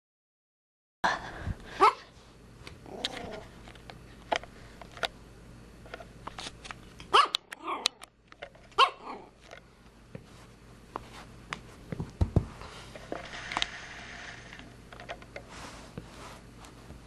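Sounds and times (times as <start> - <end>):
puppy yapping: 7.1 - 8.0, 8.8 - 9.3.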